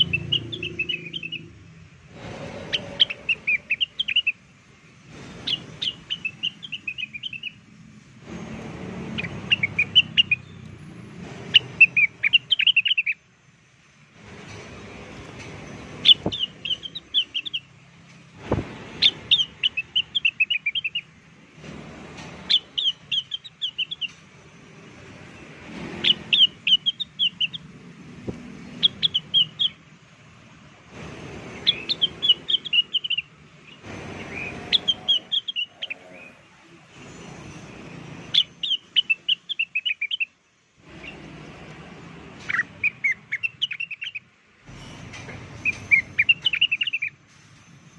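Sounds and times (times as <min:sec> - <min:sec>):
bird call of quick sharp chirps: 0:02.5 - 0:04.4, 0:05.3 - 0:07.6, 0:09.1 - 0:10.6, 0:11.5 - 0:13.2, 0:16.0 - 0:17.7, 0:18.8 - 0:21.1, 0:22.5 - 0:24.2, 0:26.0 - 0:27.7, 0:31.4 - 0:36.3, 0:38.3 - 0:41.3, 0:42.5 - 0:44.3, 0:45.6 - 0:47.2.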